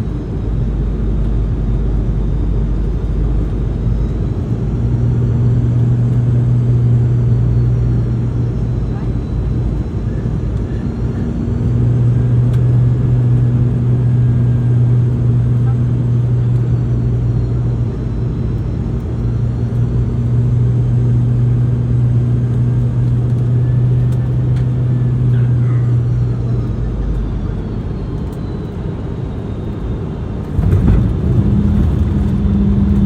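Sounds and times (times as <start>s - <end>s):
aircraft cabin rumble: 0.0s - 33.0s
jet engines humming: 0.0s - 33.0s
higher hum: 30.5s - 33.0s
sudden jolt of noise: 30.5s - 33.0s.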